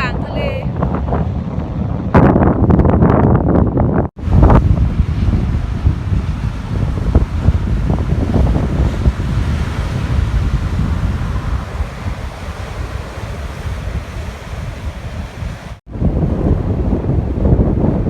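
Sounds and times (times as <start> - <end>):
wind buffeting microphone: 0.0 - 18.0
sea waves breaking on shore: 4.2 - 18.0.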